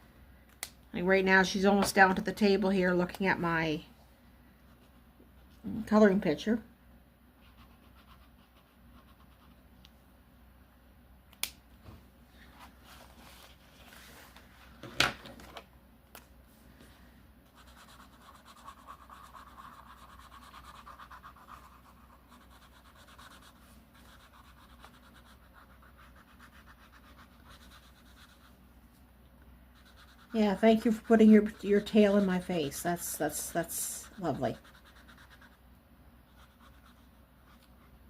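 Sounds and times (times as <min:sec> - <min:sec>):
colouring strokes scratching on paper: 0:07.4 - 0:09.6, 0:17.5 - 0:28.6, 0:29.8 - 0:35.6, 0:36.3 - 0:38.0.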